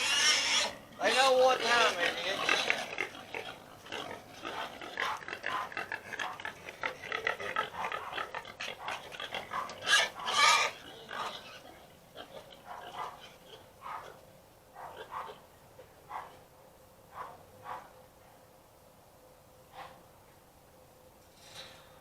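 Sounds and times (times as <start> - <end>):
pig calls: 0.0 - 14.2, 14.8 - 16.4
pigs grunting: 0.0 - 14.2, 14.8 - 16.4.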